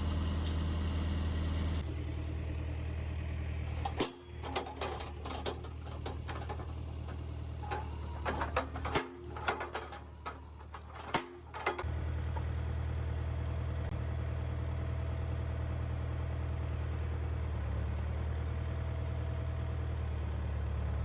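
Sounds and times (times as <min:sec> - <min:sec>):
engine idling: 0:00.0 - 0:13.9.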